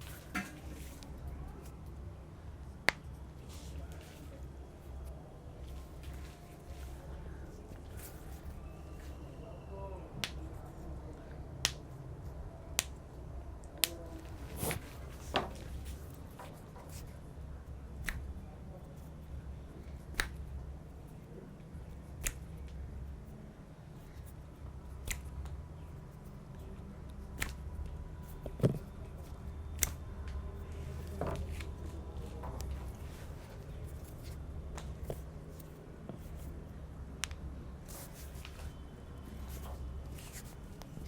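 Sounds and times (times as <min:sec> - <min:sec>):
sharp snapping clicks: 0:11.6 - 0:12.0, 0:12.8 - 0:14.1, 0:18.0 - 0:18.4, 0:20.0 - 0:20.6, 0:21.6 - 0:22.8, 0:24.2 - 0:30.4, 0:37.1 - 0:38.1.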